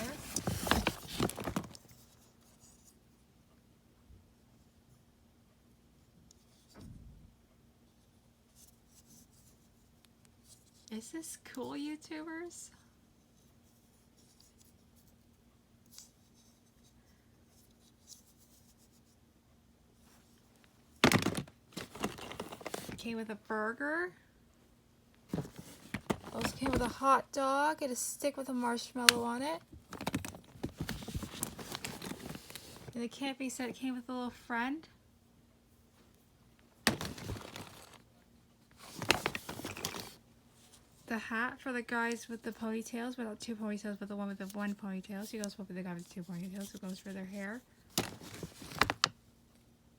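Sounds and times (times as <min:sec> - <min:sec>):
faint rustling: 0:00.0 - 0:02.9, 0:20.0 - 0:23.1, 0:25.2 - 0:27.2, 0:36.0 - 0:38.0.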